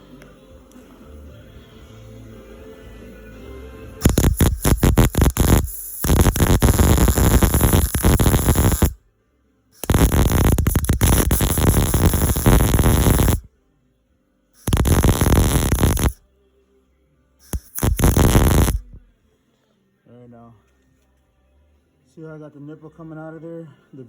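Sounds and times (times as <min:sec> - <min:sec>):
welding arc crackling and buzzing: 0:04.0 - 0:09.0, 0:09.8 - 0:13.5, 0:14.6 - 0:16.2, 0:17.4 - 0:19.0.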